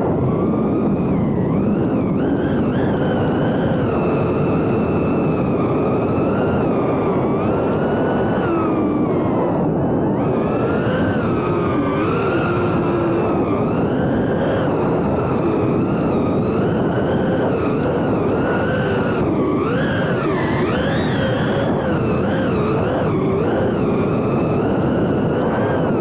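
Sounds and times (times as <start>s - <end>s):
quadcopter propellers whining: 7.5s - 26.0s.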